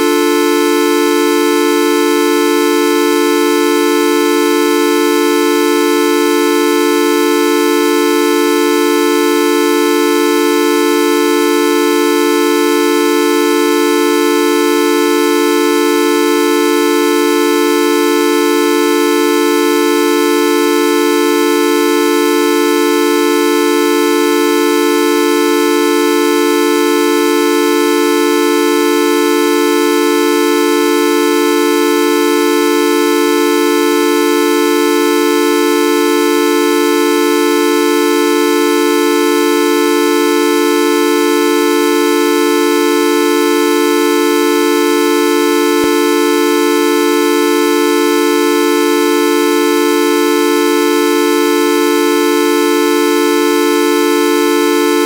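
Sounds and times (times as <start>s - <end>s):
buzzy horn-like electronic tone: 0.0s - 6.5s, 39.8s - 55.0s.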